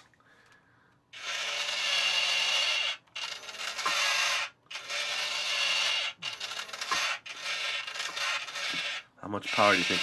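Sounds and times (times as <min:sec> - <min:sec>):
toy electric motor grinding: 0:01.1 - 0:10.0.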